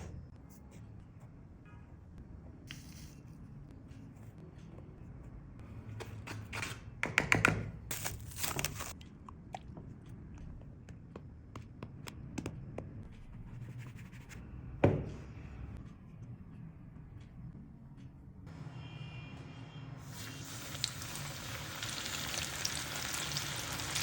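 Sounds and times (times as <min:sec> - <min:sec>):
food crunching and scraping: 0:07.9 - 0:09.1.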